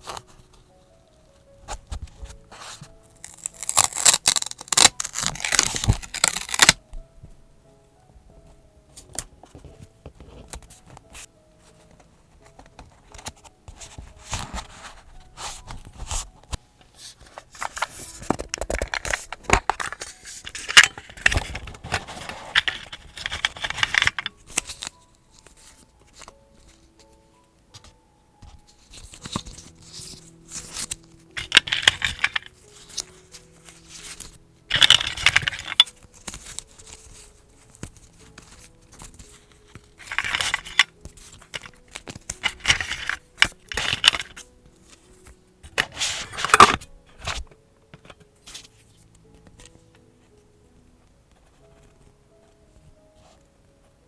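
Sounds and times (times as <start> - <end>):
faint background music: 0.0 - 54.0
paper scraping and tearing: 2.5 - 6.8, 17.5 - 24.9, 29.0 - 44.4, 45.8 - 47.4.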